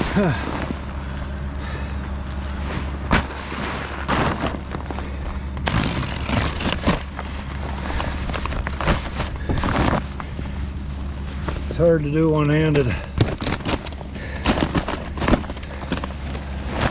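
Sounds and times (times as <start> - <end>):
plastic tarp crackling and scraping: 0.0 - 10.3, 12.8 - 16.9
low engine hum: 0.0 - 16.9.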